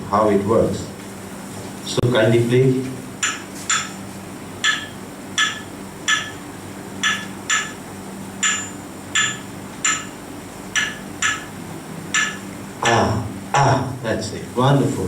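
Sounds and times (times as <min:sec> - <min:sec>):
claves clicking rhythm: 0:03.2 - 0:13.2.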